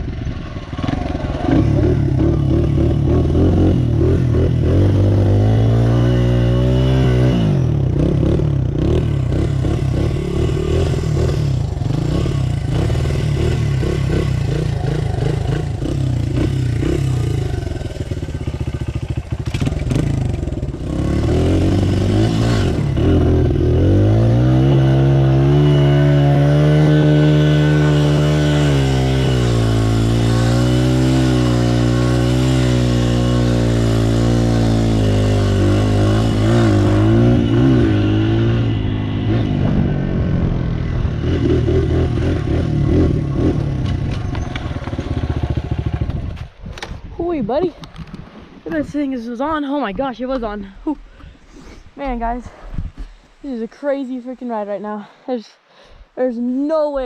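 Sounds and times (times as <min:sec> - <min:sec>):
dirt bike engine revving: 0:00.0 - 0:46.5.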